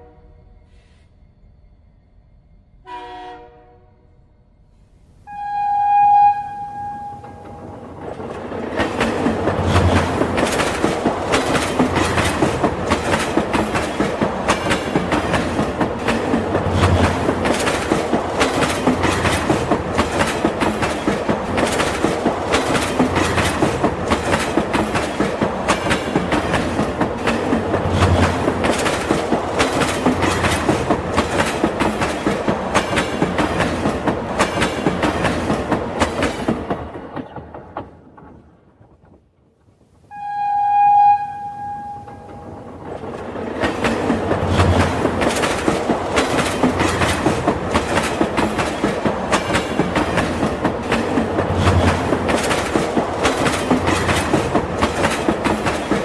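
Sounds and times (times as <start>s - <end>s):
toy train horn toot: 2.9s - 4.0s, 5.3s - 7.5s, 40.1s - 42.6s
toy train wheels clickety-clack: 7.3s - 38.0s, 43.6s - 56.0s.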